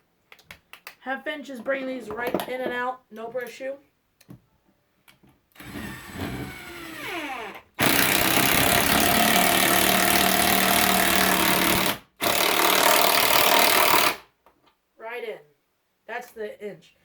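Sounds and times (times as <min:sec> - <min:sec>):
impact wrench hammering: 0:07.8 - 0:14.2.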